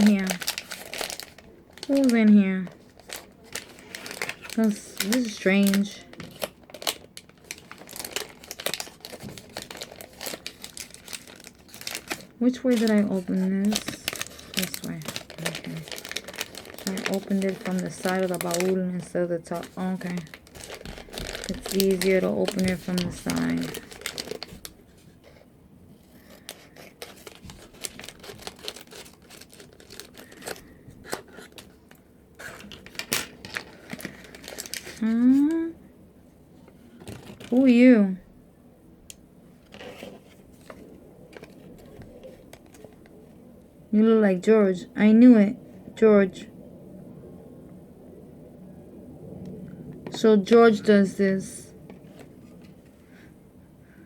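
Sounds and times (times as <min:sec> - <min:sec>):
packaging crinkling and rustling: 0:00.0 - 0:35.7, 0:36.6 - 0:37.9, 0:39.5 - 0:43.4, 0:51.8 - 0:53.2.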